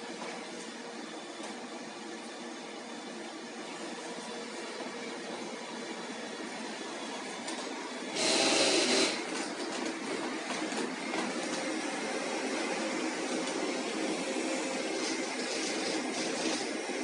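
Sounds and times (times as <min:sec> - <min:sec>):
robot vacuum cleaner running: 0:00.0 - 0:17.0.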